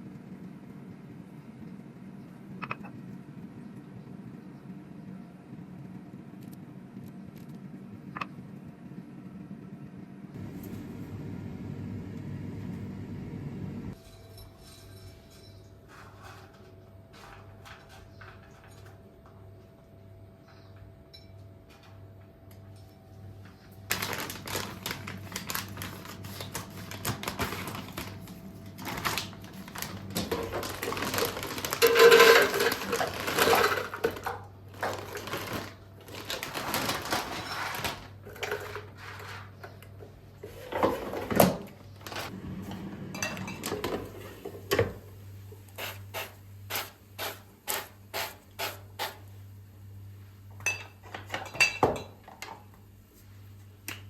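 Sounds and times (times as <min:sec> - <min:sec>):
steady low hum: 0:00.0 - 0:37.2
dishes and utensils clinking: 0:14.0 - 0:19.2, 0:30.2 - 0:35.1, 0:43.2 - 0:44.8, 0:50.6 - 0:52.6.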